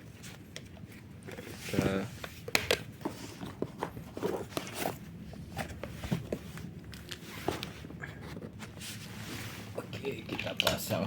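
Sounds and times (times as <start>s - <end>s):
soft rustles: 3.1s - 10.3s.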